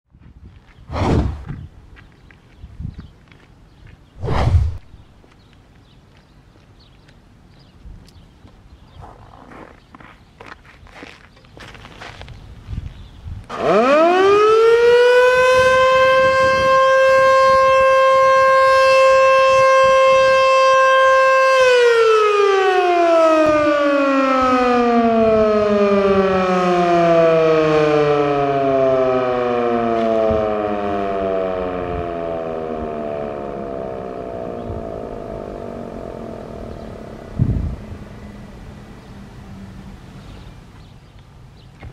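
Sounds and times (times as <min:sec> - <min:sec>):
outdoor warning siren: 0:13.5 - 0:40.8.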